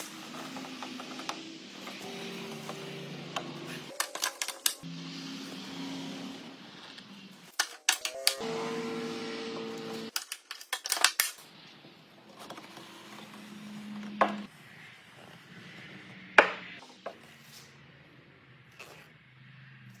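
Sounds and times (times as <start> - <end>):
hard objects knocking: 16.4 - 16.8.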